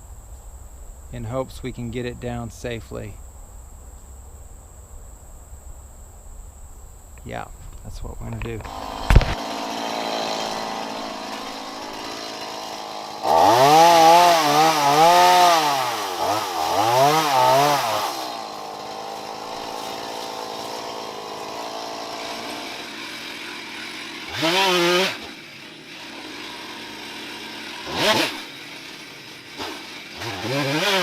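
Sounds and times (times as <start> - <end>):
chainsaw idling and revving: 8.0 - 31.0.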